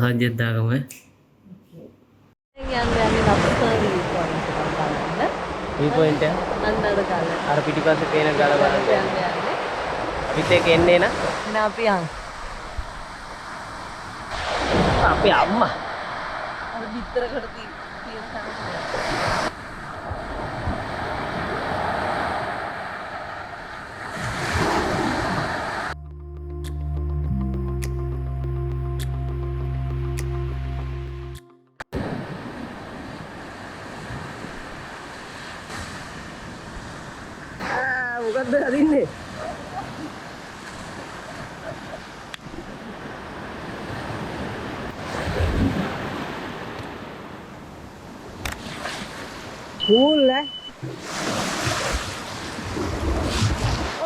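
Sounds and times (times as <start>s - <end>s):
ocean surf washing on beach: 2.6s - 26.0s, 32.0s - 54.0s
wind on microphone: 39.2s - 49.1s, 50.8s - 54.0s.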